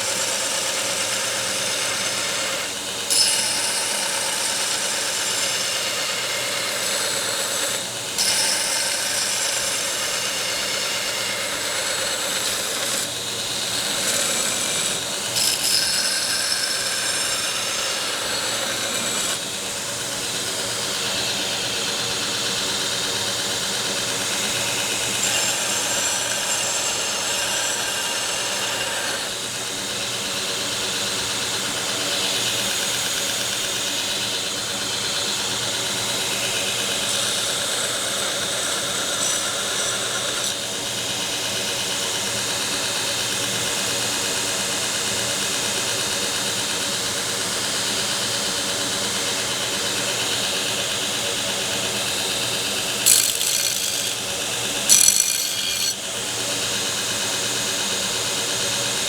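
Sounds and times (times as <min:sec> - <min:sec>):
belt grinder motor hum: 0:46.7 - 0:59.0
knife blade grinding hiss: 0:52.7 - 0:56.0.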